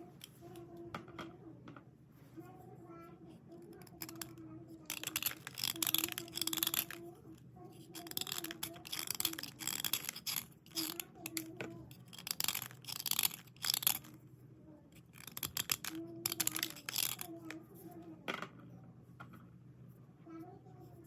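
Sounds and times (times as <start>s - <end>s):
dry raspy scraping of pencils: 3.3s - 14.2s, 14.9s - 18.0s.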